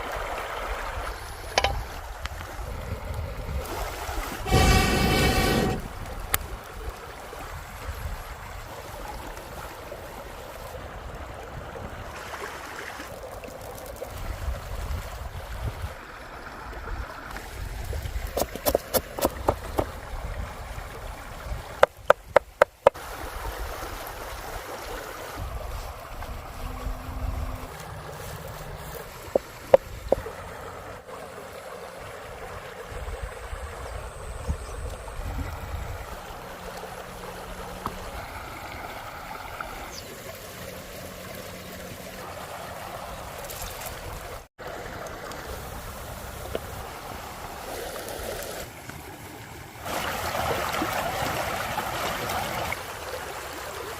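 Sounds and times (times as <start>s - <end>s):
river water rushing: 19.2s - 32.8s.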